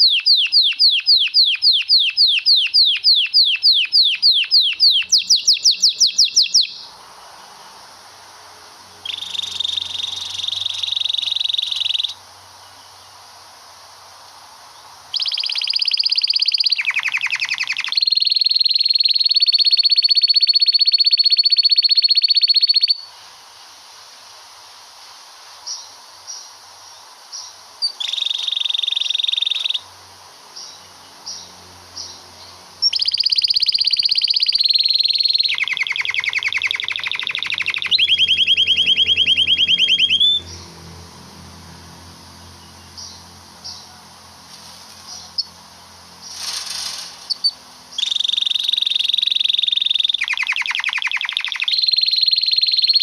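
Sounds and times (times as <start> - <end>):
canary singing rapid trills: 0.0 - 7.0, 9.0 - 12.2, 15.1 - 23.1, 27.4 - 29.8, 30.6 - 40.9, 45.0 - 53.0.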